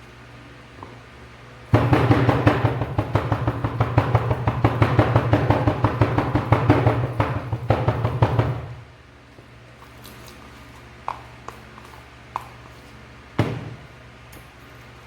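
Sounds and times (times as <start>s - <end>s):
vibrator buzzing with rattle: 1.7s - 8.9s.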